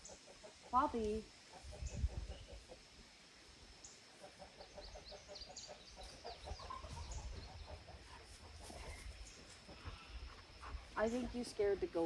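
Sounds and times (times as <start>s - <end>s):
chickens clucking: 0.0s - 0.9s, 1.5s - 2.9s, 4.1s - 11.3s.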